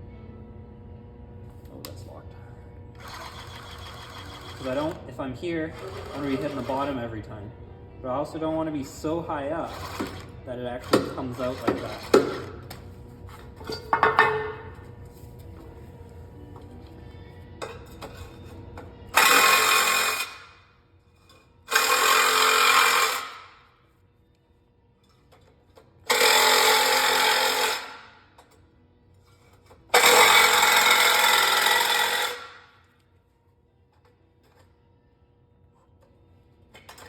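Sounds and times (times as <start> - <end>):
power tool cutting aluminum: 3.0 - 4.9, 5.7 - 7.0, 9.6 - 12.6, 19.1 - 20.6, 21.7 - 23.6, 26.1 - 28.2, 29.9 - 32.8.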